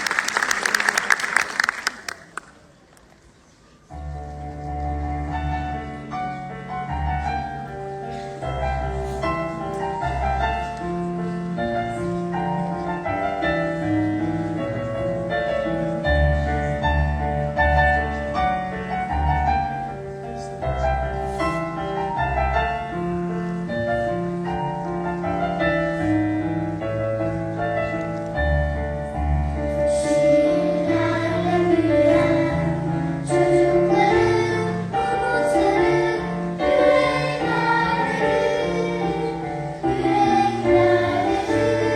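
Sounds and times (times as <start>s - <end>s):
piano accompaniment: 3.9s - 41.9s
children's choir singing: 29.6s - 41.9s.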